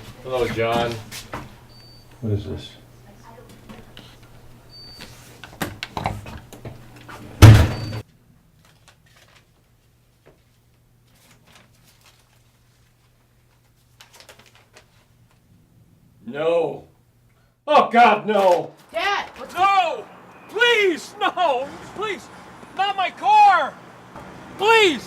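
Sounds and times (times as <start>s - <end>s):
door shutting thump: 7.4s - 8.0s.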